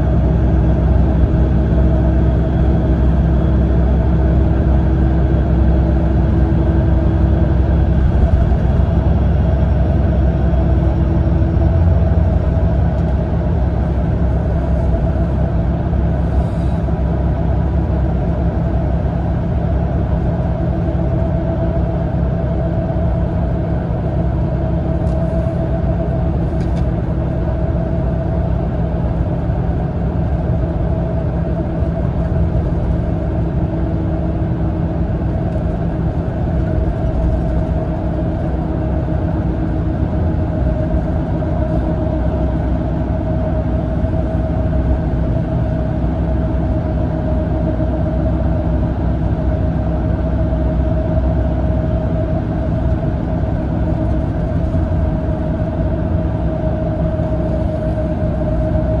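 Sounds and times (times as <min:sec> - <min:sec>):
diesel engine and tyre rumble: 0:00.0 - 0:59.0
drivetrain whine: 0:00.0 - 0:59.0.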